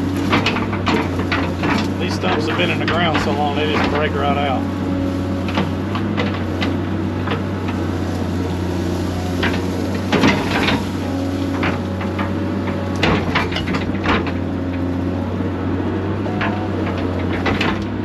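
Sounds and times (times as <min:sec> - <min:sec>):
excavator engine running: 0:00.0 - 0:18.0
wood and roots cracking: 0:00.0 - 0:18.0.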